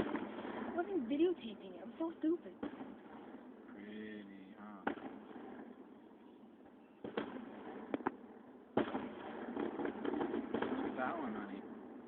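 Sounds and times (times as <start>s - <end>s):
low steady hiss: 0.0s - 12.0s
short sharp bangs: 7.0s - 8.2s, 8.8s - 11.4s.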